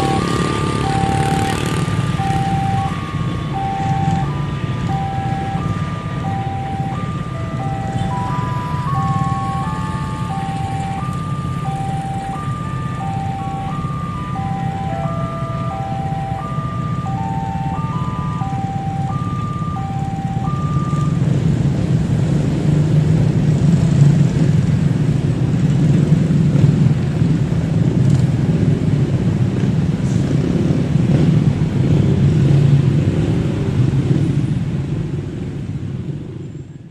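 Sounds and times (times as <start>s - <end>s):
level crossing warning siren: 0.0s - 22.6s.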